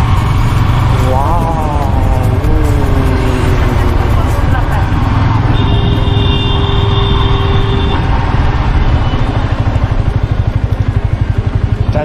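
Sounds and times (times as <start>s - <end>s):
motorcycle engine running: 0.0s - 12.0s
steady high tone: 1.0s - 8.1s.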